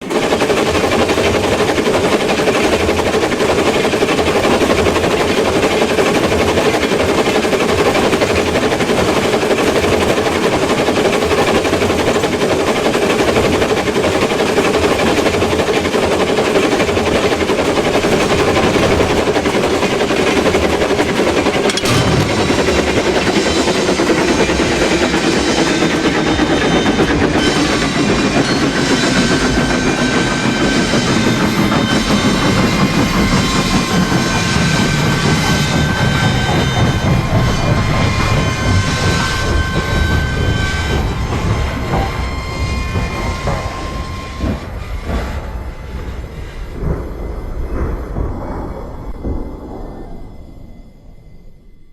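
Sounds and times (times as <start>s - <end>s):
train wheels clattering on track: 0.0s - 50.2s
sharp knock: 21.7s - 28.6s.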